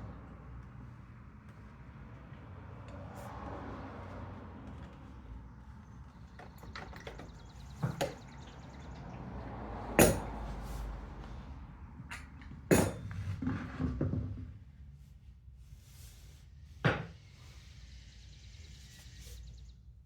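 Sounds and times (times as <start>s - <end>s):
tools and parts knocking: 6.4s - 8.4s, 10.0s - 10.4s, 12.1s - 14.5s.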